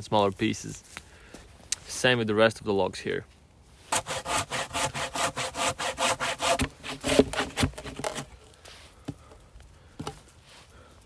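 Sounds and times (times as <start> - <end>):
hand saw cutting log: 3.9 - 8.3.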